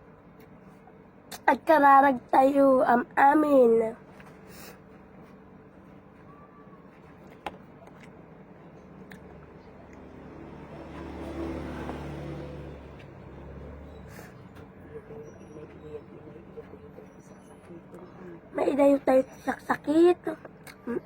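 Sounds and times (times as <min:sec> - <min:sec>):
motor vehicle passing: 0:09.0 - 0:17.0.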